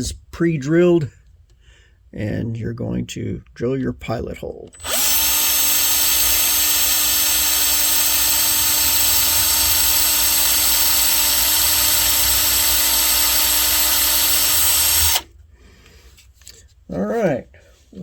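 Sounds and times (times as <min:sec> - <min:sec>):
power drill whining: 0:04.7 - 0:15.3.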